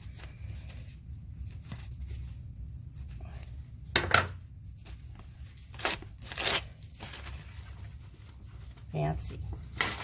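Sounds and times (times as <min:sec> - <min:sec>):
scissors cutting packing wrap: 0:05.7 - 0:07.2.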